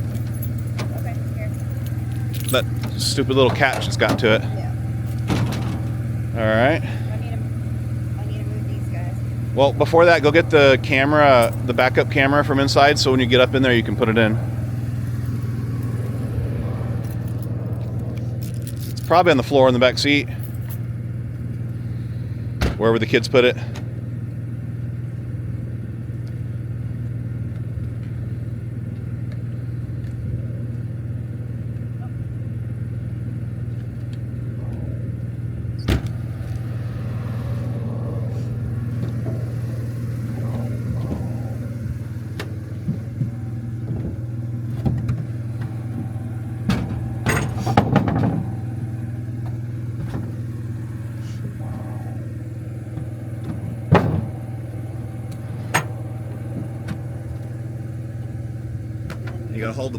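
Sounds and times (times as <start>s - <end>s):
generator humming: 0.0s - 59.9s.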